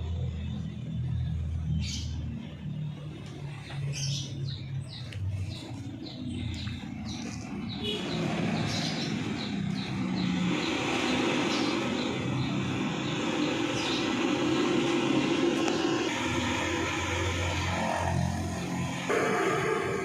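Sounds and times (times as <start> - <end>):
low engine rumble: 0.0 - 20.0
passing vehicle: 0.0 - 20.0
small birds chirping: 0.4 - 19.6.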